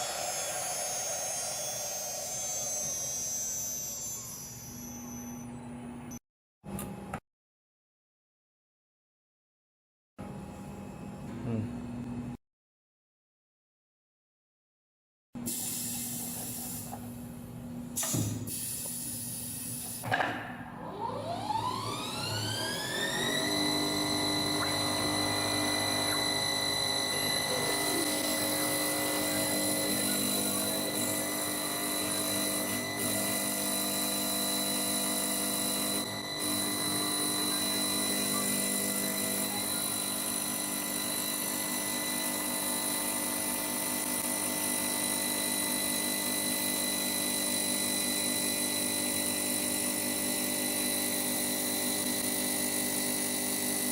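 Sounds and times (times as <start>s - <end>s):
lathe motor whining: 20.8s - 53.9s.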